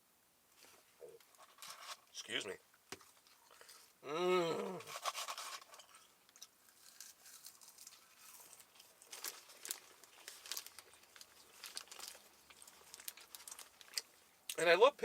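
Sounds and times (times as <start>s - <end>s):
soft chewing: 2.8s - 4.0s, 4.6s - 14.6s
paper wrapper crinkling: 4.8s - 14.2s.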